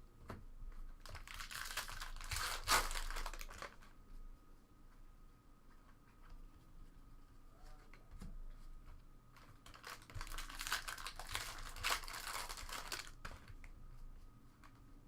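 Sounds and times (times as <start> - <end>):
wrapper tearing and crinkling: 1.0 - 3.8, 9.6 - 13.3.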